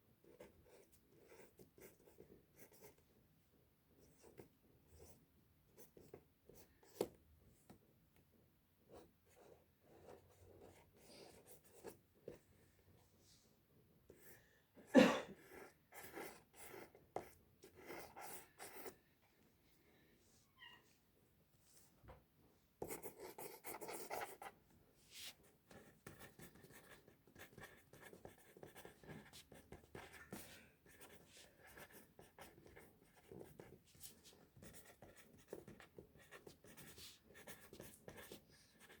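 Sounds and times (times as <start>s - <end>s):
pen scratching on paper: 0.2s - 3.0s, 4.0s - 5.2s, 5.8s - 7.2s, 8.9s - 12.4s, 15.4s - 19.0s, 22.8s - 24.5s, 25.1s - 39.0s.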